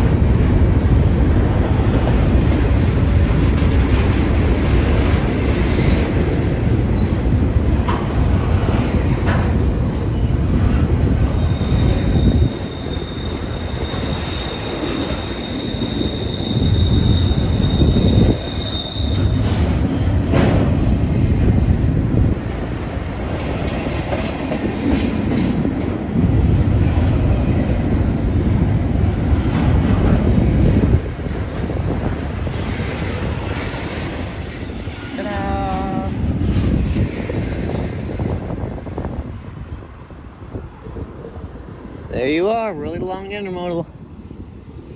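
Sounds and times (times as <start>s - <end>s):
train wheels rumbling on rail: 0.0s - 44.9s
high wheel squeal: 11.3s - 20.0s, 33.5s - 36.1s.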